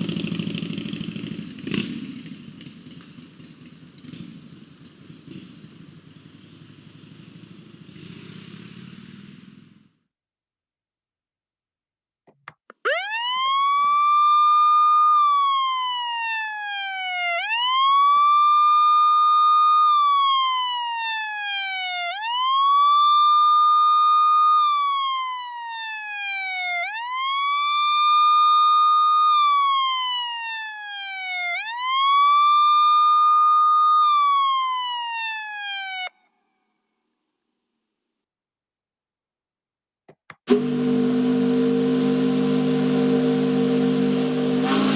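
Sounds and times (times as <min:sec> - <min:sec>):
emergency vehicle siren wailing: 0:12.7 - 0:36.6, 0:40.5 - 0:44.9.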